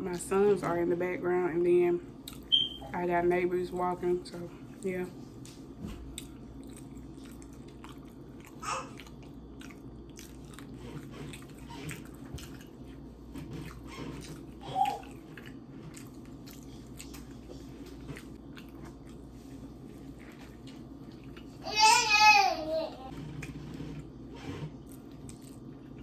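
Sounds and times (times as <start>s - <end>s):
person chewing food: 2.2s - 2.6s, 6.0s - 21.6s, 23.1s - 26.0s.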